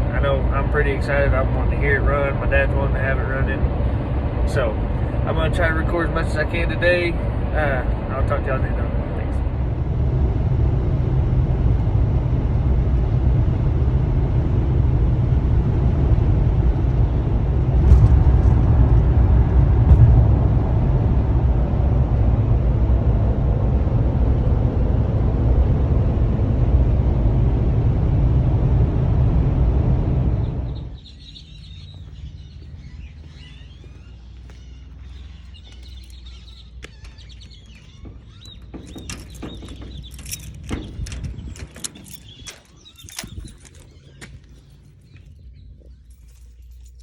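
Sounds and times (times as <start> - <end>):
vehicle road rumble: 0.0 - 47.0
birds chirping: 30.4 - 47.0
clicks and knocks: 38.0 - 43.8.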